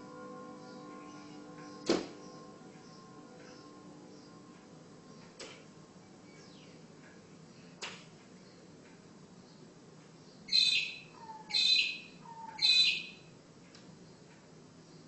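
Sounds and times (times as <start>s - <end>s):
bird harsh calls: 10.4s - 13.3s.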